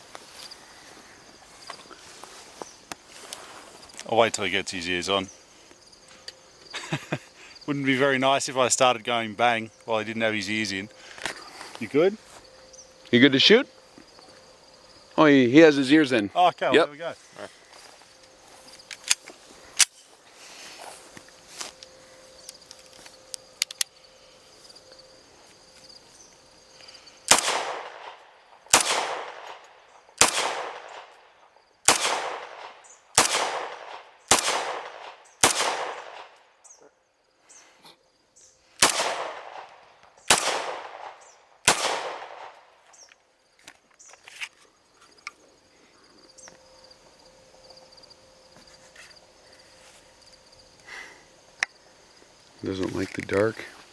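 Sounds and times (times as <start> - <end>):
rifle shots echoing: 27.3 - 31.2, 31.8 - 36.4, 38.8 - 42.7.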